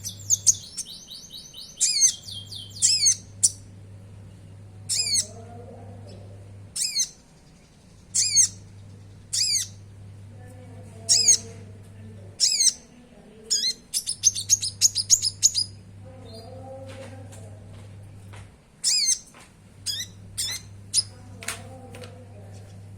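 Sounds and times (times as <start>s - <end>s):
sunbird calling: 0.0s - 3.7s, 4.4s - 5.5s, 6.1s - 10.0s, 11.1s - 11.6s, 12.4s - 16.5s, 18.8s - 21.2s
steady low hum: 0.0s - 22.9s.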